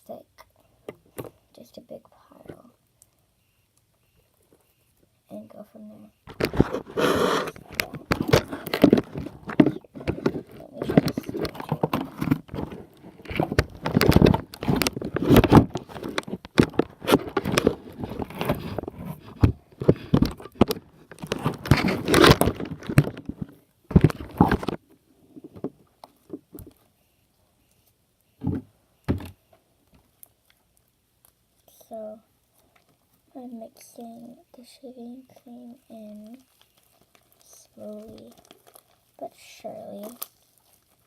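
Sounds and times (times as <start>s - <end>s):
slime squishing by hand: 35.4s - 41.0s.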